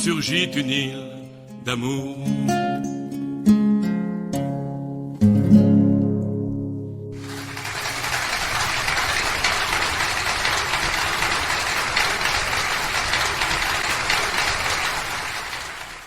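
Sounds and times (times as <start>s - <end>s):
audience applauding: 7.2s - 16.0s.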